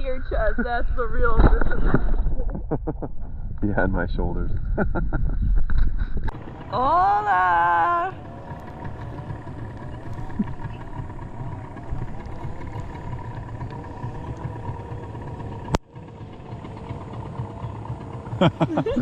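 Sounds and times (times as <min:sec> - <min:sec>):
outboard motor running: 0:05.6 - 0:19.0.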